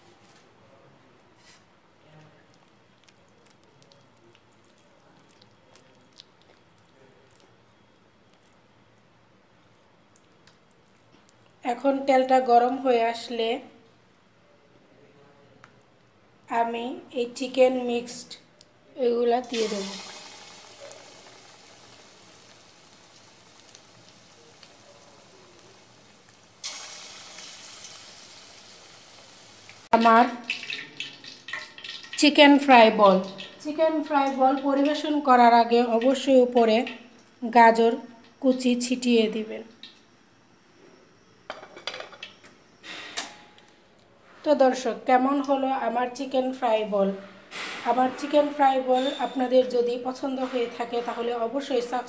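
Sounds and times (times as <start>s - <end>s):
food deep-frying in hot oil: 19.3s - 40.1s.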